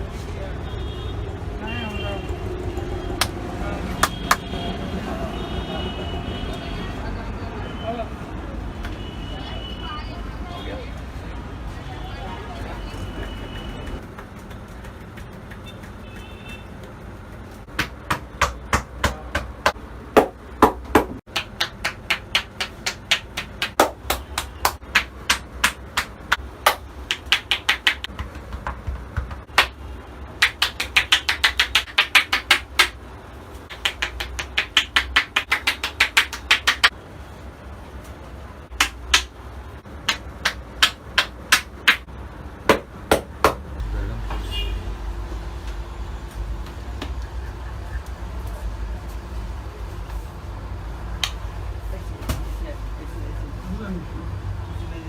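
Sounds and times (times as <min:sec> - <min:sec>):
hands slapping skin: 0:14.0 - 0:16.3, 0:17.7 - 0:29.8, 0:30.4 - 0:33.0, 0:33.7 - 0:36.9, 0:38.7 - 0:39.3, 0:40.1 - 0:42.0.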